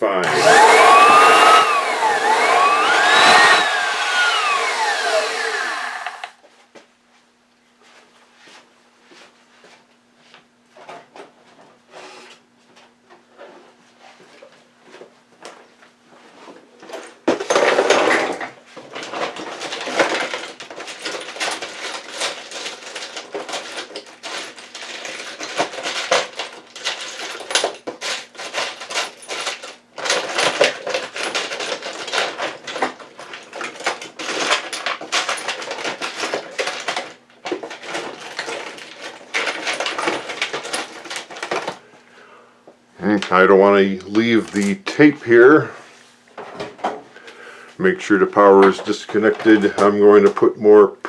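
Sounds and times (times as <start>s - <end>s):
hands clattering vacuum cleaner parts: 0.2s - 6.3s, 16.9s - 41.8s.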